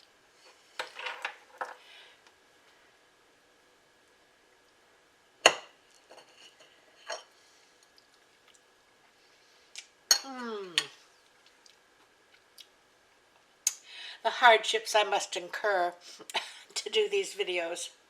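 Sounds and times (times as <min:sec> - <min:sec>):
person saying mmm: 0:10.2 - 0:11.0.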